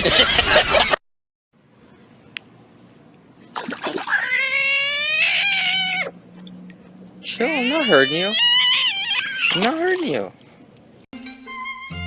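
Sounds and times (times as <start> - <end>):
cat yowling: 4.0 - 6.1, 7.4 - 9.7.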